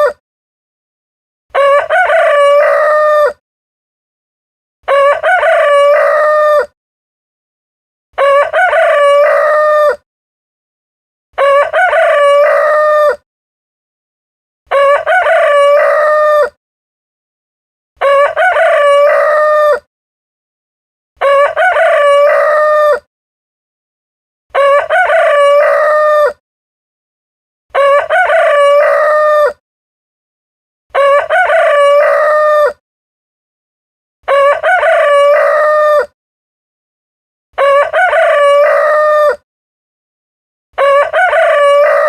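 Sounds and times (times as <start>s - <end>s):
rooster crowing: 1.6s - 3.4s, 4.9s - 6.7s, 8.2s - 10.0s, 11.4s - 13.2s, 14.7s - 16.6s, 18.0s - 19.9s, 21.2s - 23.1s, 24.6s - 26.4s, 27.7s - 29.6s, 30.9s - 32.8s, 34.3s - 36.1s, 37.6s - 39.4s, 40.8s - 42.0s.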